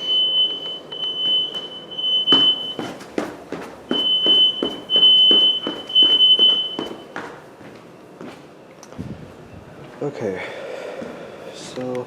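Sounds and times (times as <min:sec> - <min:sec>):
smoke alarm horn tone: 0:00.0 - 0:02.9, 0:04.0 - 0:07.1
footsteps on hard floor: 0:01.2 - 0:08.4.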